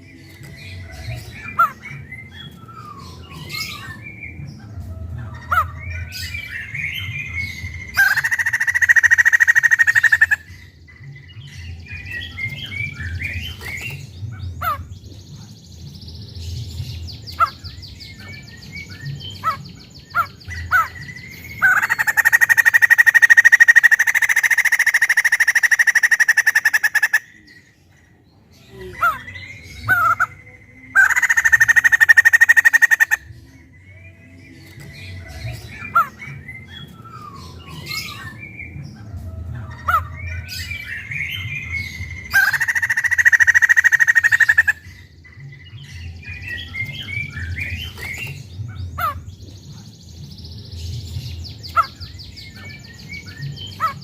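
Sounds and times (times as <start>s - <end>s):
harsh rattling bird calls: 0.0s - 34.0s, 34.6s - 54.0s
bird chirps and whistles: 1.5s - 4.4s, 29.0s - 33.3s, 35.8s - 38.8s.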